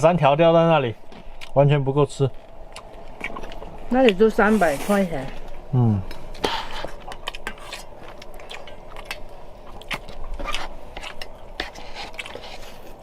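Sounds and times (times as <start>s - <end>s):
faint steady hum: 0.0s - 13.0s
chewing and biting: 2.6s - 4.2s, 6.0s - 13.0s.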